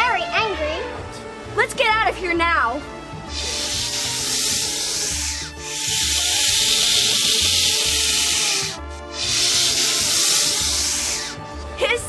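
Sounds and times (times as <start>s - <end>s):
snake hissing: 3.3s - 11.6s.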